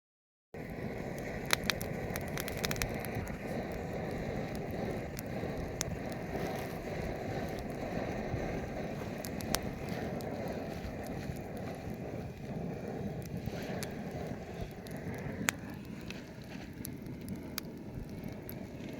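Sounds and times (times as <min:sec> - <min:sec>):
campfire crackling and popping: 0:00.6 - 0:18.9
fire low rush: 0:00.6 - 0:18.9.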